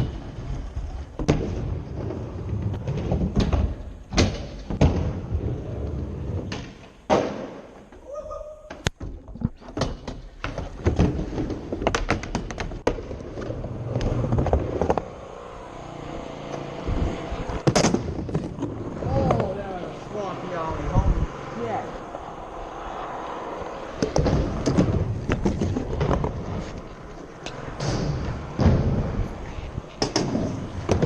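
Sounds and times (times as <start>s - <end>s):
skateboard clacks and slaps: 0.0s - 8.0s, 8.6s - 15.1s, 17.5s - 19.7s, 23.8s - 31.0s
skateboard wheels rumbling: 0.0s - 31.0s.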